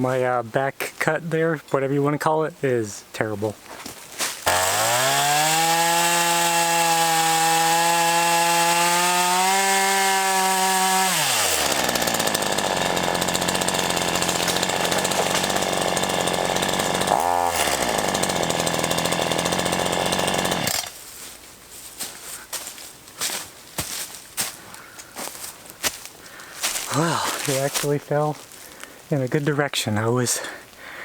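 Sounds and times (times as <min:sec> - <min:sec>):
chainsaw running at full throttle: 0:04.4 - 0:21.0, 0:26.6 - 0:27.6.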